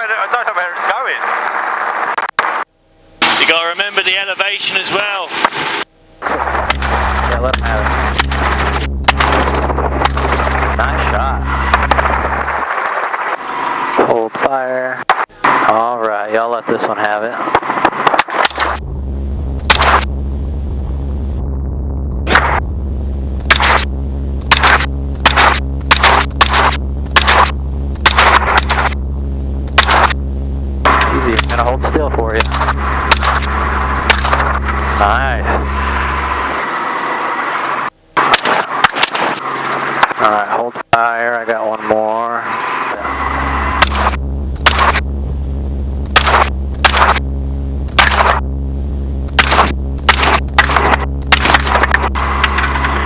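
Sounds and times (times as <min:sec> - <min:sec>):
helicopter drone: 0:03.0 - 0:53.0
gunshots: 0:05.4 - 0:13.4, 0:17.5 - 0:18.8, 0:19.6 - 0:20.1, 0:22.3 - 0:22.6, 0:23.4 - 0:23.9, 0:24.5 - 0:29.0, 0:29.7 - 0:30.2, 0:30.9 - 0:34.6, 0:38.2 - 0:40.2, 0:43.7 - 0:45.0, 0:46.0 - 0:47.2, 0:47.9 - 0:48.4, 0:49.3 - 0:52.7.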